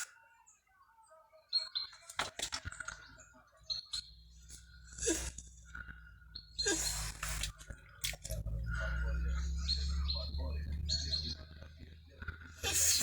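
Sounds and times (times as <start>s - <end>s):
birds chirping: 0.0s - 13.0s
low steady hum: 4.0s - 13.0s.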